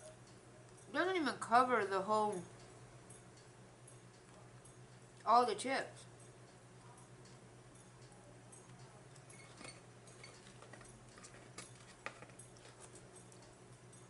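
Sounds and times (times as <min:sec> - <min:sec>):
chewing clicks: 0:10.2 - 0:14.0.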